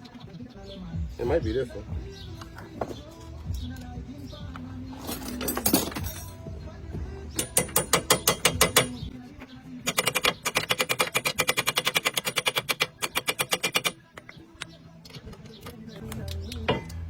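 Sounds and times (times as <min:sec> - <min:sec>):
ratchet wrench clicking: 0:07.4 - 0:09.0, 0:09.8 - 0:17.0.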